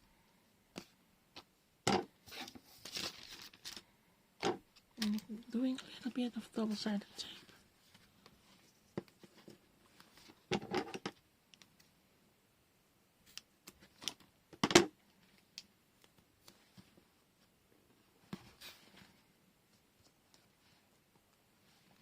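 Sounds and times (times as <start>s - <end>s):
paper and tape crinkling: 2.2s - 3.8s.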